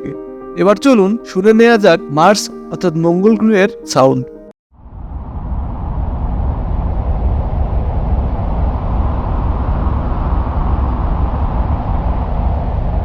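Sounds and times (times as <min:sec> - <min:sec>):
low rumbling noise: 0:04.8 - 0:13.0.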